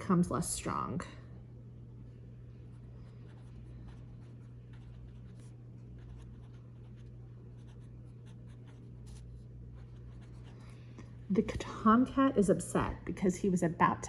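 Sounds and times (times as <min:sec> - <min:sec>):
low hum: 0:00.0 - 0:14.0
pen scratching on paper: 0:03.3 - 0:09.2.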